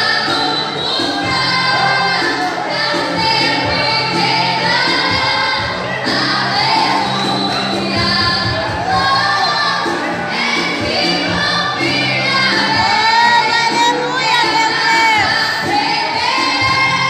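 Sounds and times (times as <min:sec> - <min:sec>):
group singing gospel song: 0:00.0 - 0:17.0.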